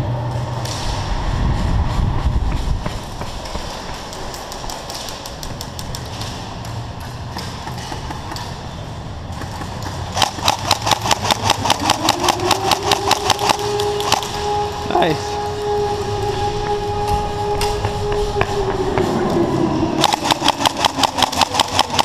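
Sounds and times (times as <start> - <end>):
background noise: 0.0 - 22.0
scattered faint shooting: 2.6 - 14.7, 20.0 - 22.0
airsoft gun full-auto burst: 10.2 - 14.2, 20.0 - 22.0.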